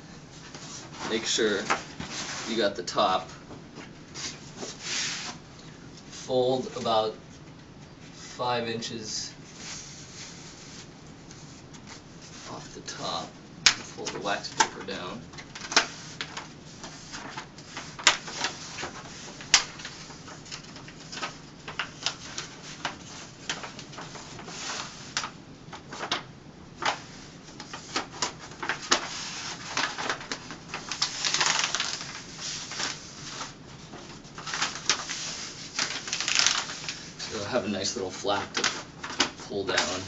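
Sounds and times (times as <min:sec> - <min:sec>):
paper rustle: 0:00.4 - 0:05.4, 0:09.5 - 0:40.0
wax paper crinkling: 0:09.5 - 0:40.0.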